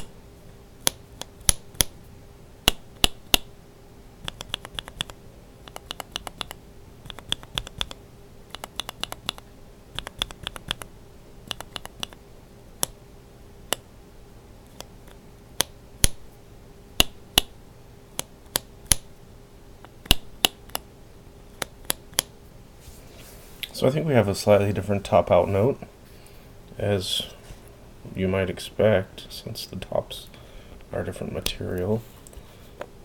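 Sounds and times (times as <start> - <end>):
keyboard switches clicking: 4.2 - 9.4, 10.0 - 10.9, 11.5 - 12.2.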